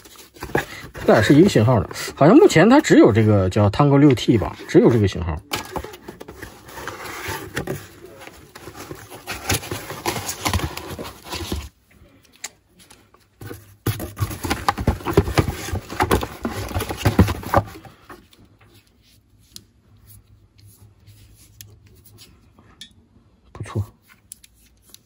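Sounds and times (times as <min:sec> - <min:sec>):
clicks knocks and rustling packaging: 0:00.0 - 0:01.9, 0:05.4 - 0:11.8, 0:13.3 - 0:18.4.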